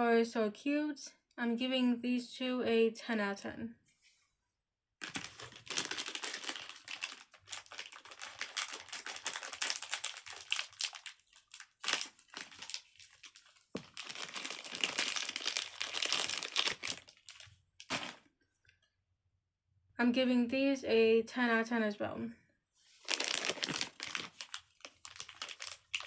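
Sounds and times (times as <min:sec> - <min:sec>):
packaging crinkling: 0:05.0 - 0:18.3, 0:23.0 - 0:26.0.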